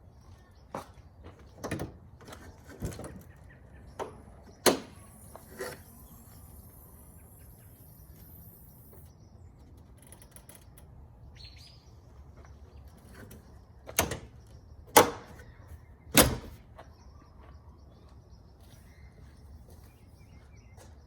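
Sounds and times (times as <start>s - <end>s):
faint high chirping: 3.5s - 12.2s.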